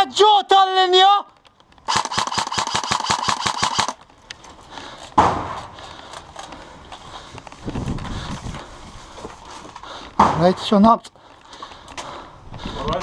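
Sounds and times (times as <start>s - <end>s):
airsoft gun automatic burst: 1.9s - 4.0s
loud thump: 5.2s - 5.7s.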